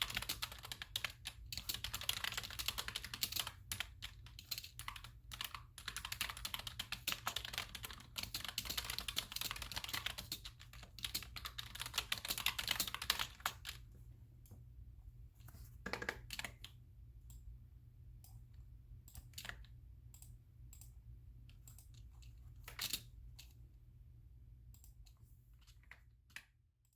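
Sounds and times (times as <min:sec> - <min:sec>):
computer keyboard typing: 0:00.0 - 0:13.9, 0:15.8 - 0:16.8, 0:19.1 - 0:20.9, 0:21.5 - 0:23.6.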